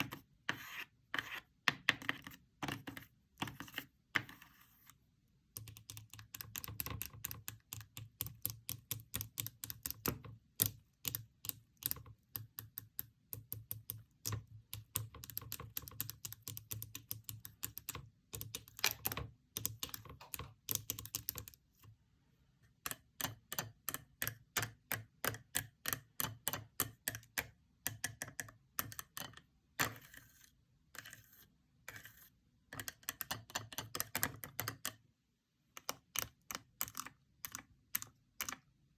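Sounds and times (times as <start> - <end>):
fingers clicking paper fidget board: 5.5 - 21.6, 32.7 - 35.0, 35.8 - 38.8.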